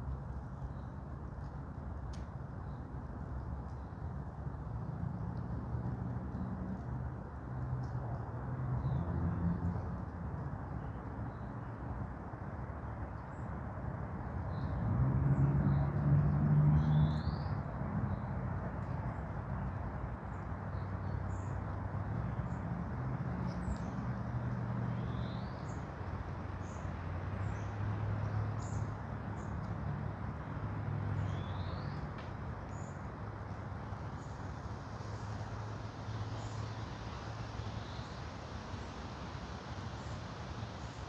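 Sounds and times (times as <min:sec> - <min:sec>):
rustling hiss: 0:33.9 - 0:41.0.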